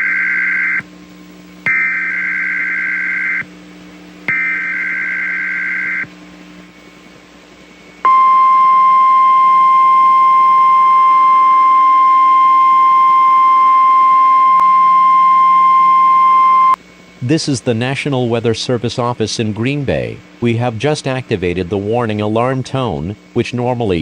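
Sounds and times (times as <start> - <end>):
steady warning alarm tone: 0.0 - 7.1, 8.0 - 16.8.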